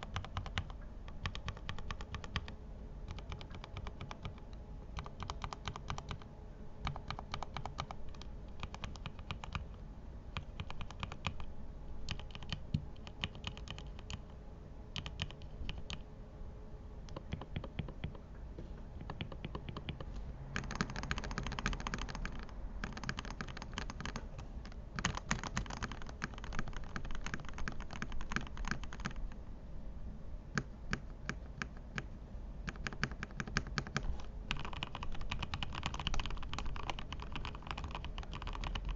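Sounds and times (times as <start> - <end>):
mechanical keyboard typing: 0.0 - 2.5, 3.1 - 9.8, 10.4 - 11.5, 12.1 - 14.2, 15.0 - 16.0, 17.1 - 18.2, 19.0 - 29.3, 32.7 - 38.9.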